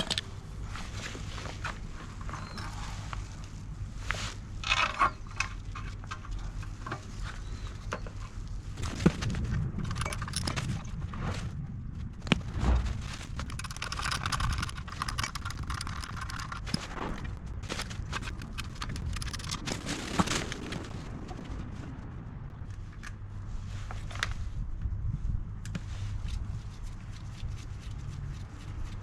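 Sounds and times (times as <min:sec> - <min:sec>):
rustling: 0:00.0 - 0:22.0
steady low hum: 0:00.0 - 0:29.0
metal tools clinking: 0:09.8 - 0:10.8, 0:13.4 - 0:16.8.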